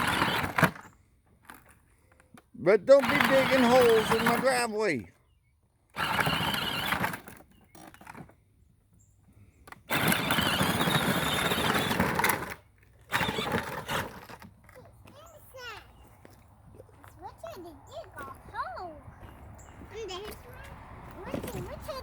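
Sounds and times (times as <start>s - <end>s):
tires spinning on dirt: 0.0s - 1.7s, 2.7s - 5.0s, 6.0s - 7.6s, 9.8s - 14.5s
ride-on toy motor running: 0.0s - 5.1s, 5.8s - 22.0s.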